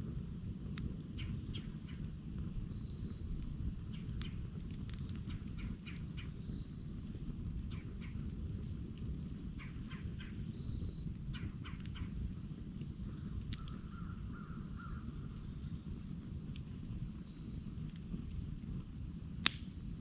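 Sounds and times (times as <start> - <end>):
campfire rumbling: 0.0 - 20.0
fire popping and crackling: 0.0 - 20.0
bird calling: 9.6 - 10.5.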